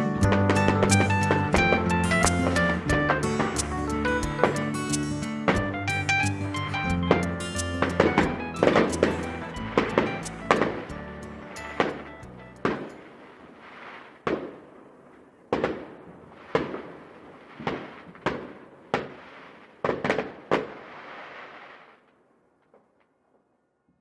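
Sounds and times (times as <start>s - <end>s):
fireworks hiss: 0.0s - 14.6s, 16.3s - 18.3s, 18.9s - 22.0s
fireworks bangs: 0.0s - 23.4s.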